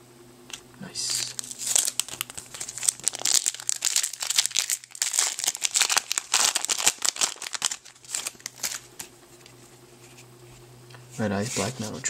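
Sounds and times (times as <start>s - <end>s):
plastic foil wrapper crinkling: 1.0s - 9.1s.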